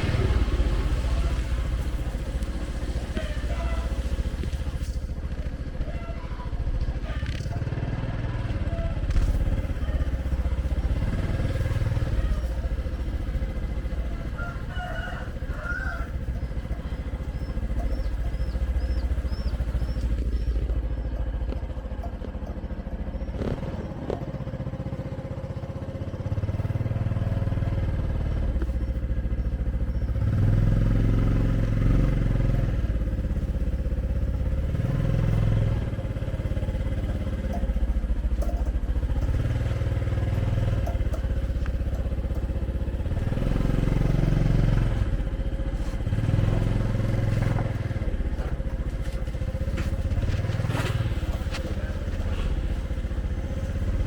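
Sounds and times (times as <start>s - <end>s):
heavy low rumble: 0.0s - 7.4s, 44.3s - 54.0s
motorbike engine: 0.0s - 54.0s
street traffic: 0.0s - 54.0s.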